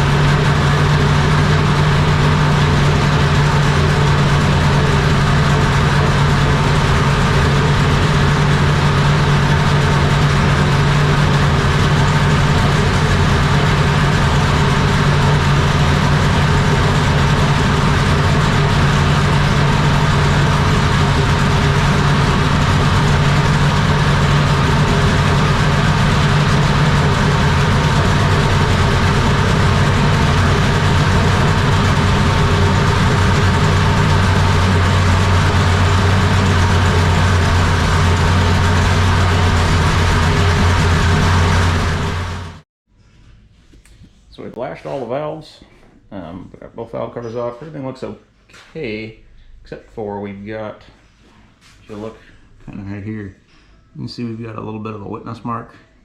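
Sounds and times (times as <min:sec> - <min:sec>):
loud car engine running steadily: 0:00.0 - 0:42.6.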